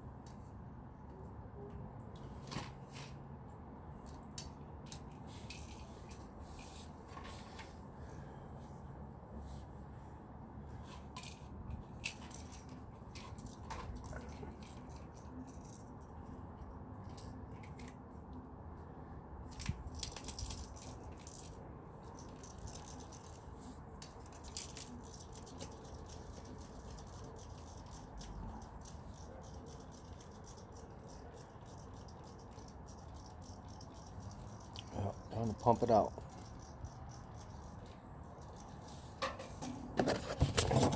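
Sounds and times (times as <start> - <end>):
small objects clicking and rattling: 19.5 - 39.2.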